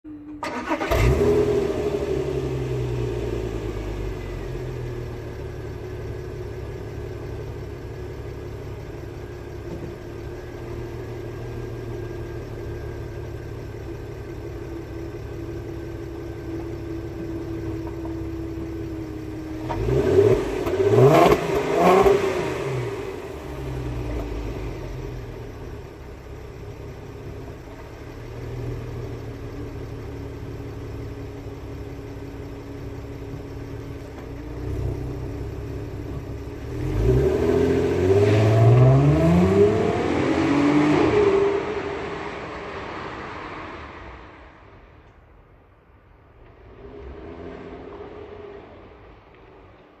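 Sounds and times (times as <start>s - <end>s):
car engine idling: 0.1s - 39.5s
car engine revving: 0.4s - 5.4s, 18.6s - 26.2s, 31.7s - 44.8s.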